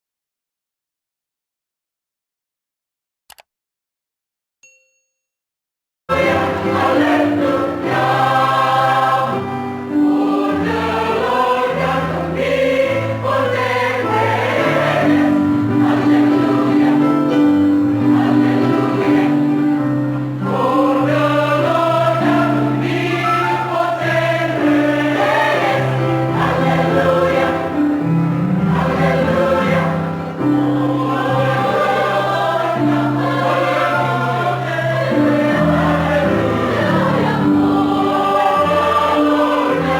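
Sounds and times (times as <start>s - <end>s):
church choir singing: 6.1s - 39.9s.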